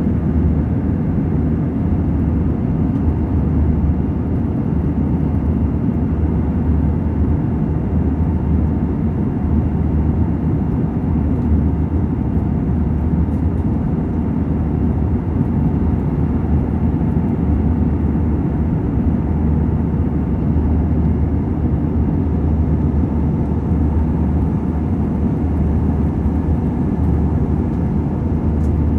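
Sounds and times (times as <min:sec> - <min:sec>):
airliner cabin rumble: 0:08.2 - 0:28.9.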